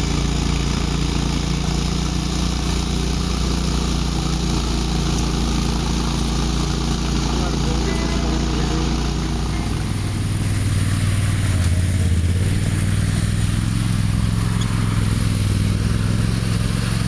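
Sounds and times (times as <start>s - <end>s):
vehicle engine running: 0.0s - 17.0s.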